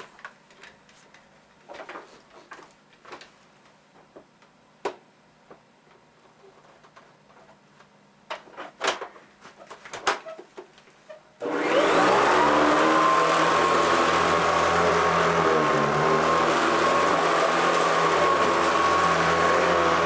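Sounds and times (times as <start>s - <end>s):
upright vacuum motor whine: 11.4s - 20.0s.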